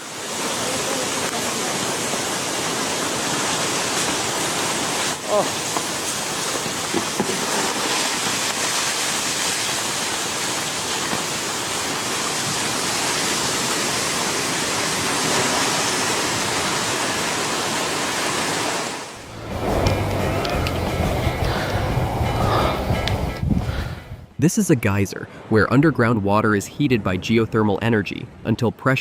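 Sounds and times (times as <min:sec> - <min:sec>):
rushing water and mud: 0:00.0 - 0:23.6.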